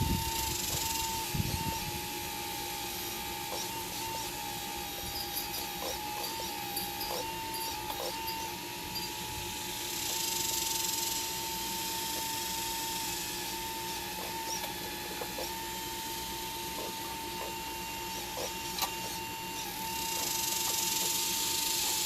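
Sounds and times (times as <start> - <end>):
hydraulic pump whining: 0.0 - 22.0.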